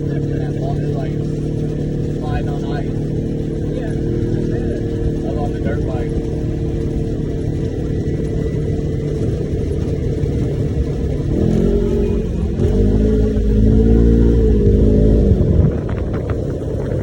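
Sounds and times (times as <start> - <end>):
utility vehicle engine revving: 0.0 - 17.0.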